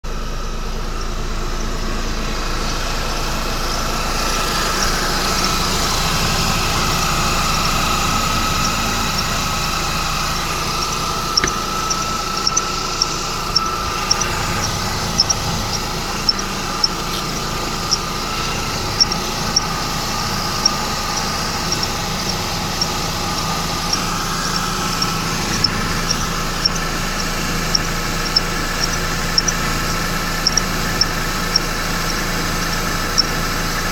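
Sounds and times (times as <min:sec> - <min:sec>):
car engine running: 0:00.0 - 0:33.9
high-pitched belt chirp: 0:03.3 - 0:32.2.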